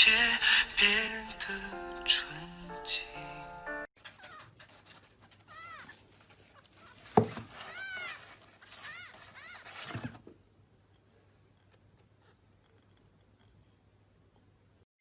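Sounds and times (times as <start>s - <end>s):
cat meowing: 7.6s - 9.8s.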